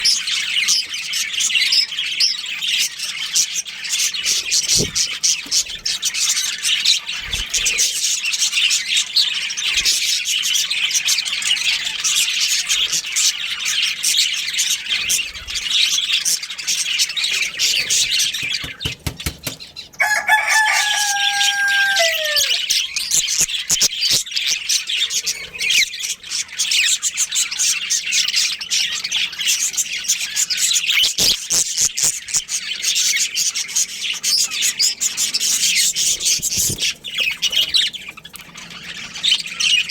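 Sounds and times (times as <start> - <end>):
budgerigars chattering: 0.0 - 39.9
rooster crowing: 20.0 - 22.8.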